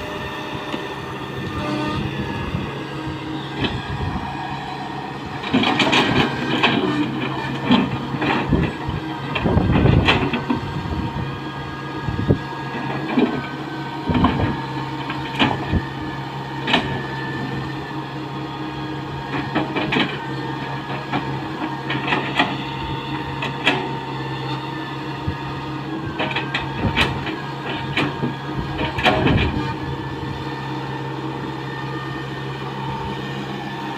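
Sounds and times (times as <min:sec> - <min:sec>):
diesel engine hum: 0:00.0 - 0:33.9
hydraulic whine: 0:00.0 - 0:33.9.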